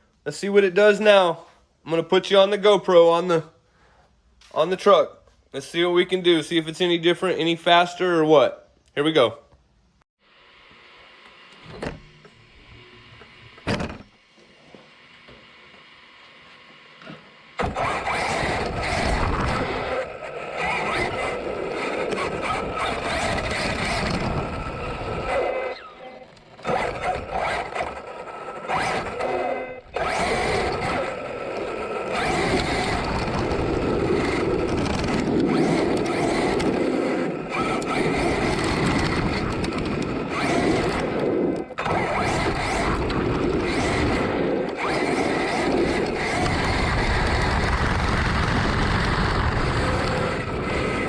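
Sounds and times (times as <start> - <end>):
rc truck whining at speed: 17.4 - 51.0.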